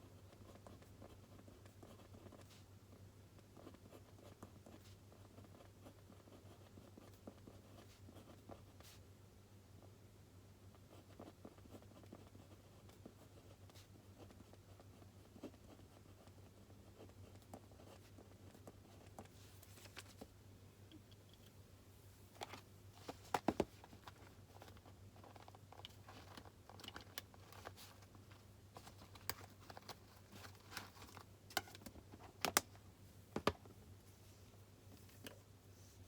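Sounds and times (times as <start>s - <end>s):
low steady hum: 0.0s - 36.0s
paper handling: 22.4s - 32.7s.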